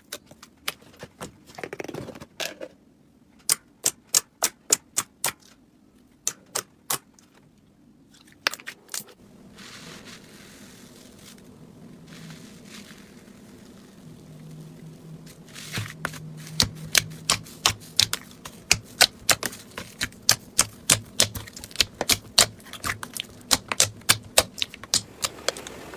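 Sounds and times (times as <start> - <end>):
slime squishing hiss: 9.4 - 25.9
slime popping: 15.6 - 25.6.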